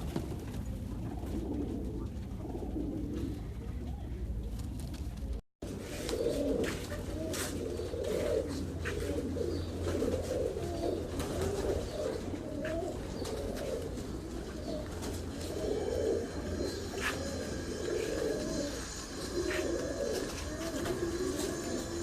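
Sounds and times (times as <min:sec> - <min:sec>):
pigeons cooing: 0:00.0 - 0:22.0
low hum: 0:08.0 - 0:22.0.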